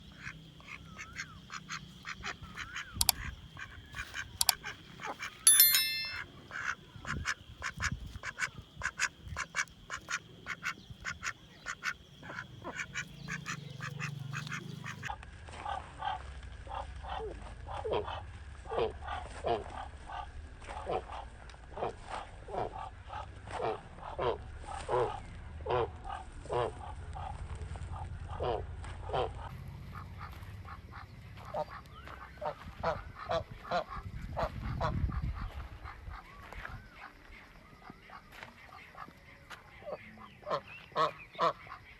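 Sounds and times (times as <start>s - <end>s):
ducks quacking: 8.3s - 15.1s, 28.0s - 41.9s.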